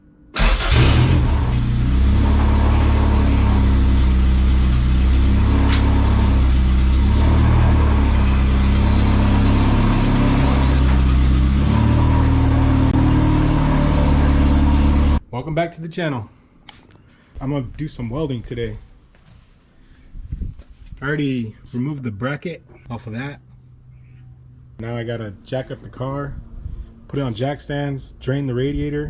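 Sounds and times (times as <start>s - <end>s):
car engine revving: 0.4s - 15.2s.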